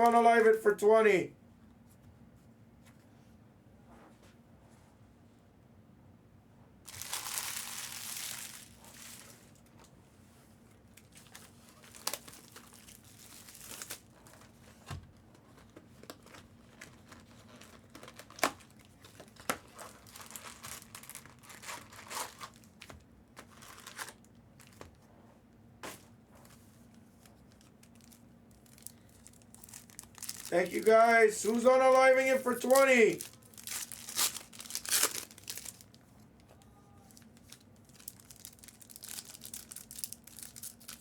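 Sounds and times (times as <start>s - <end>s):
packaging crinkling and tearing: 6.9s - 9.7s, 10.9s - 14.7s, 15.6s - 24.8s, 27.2s - 36.0s, 37.1s - 41.0s.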